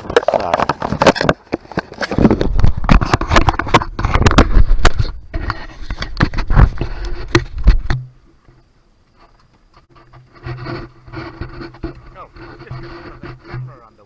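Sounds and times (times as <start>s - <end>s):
camera handling knocks and scrapes: 0.0s - 8.1s, 9.8s - 13.9s
low steady hum: 2.2s - 14.0s.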